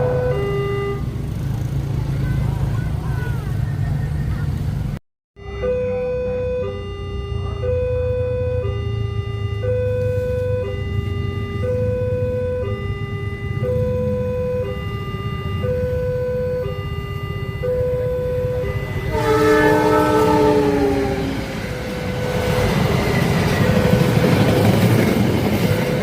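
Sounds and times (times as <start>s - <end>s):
level-crossing alarm alternating tones: 0.0s - 1.1s, 5.4s - 26.0s
train horn: 0.0s - 1.1s, 18.5s - 24.6s.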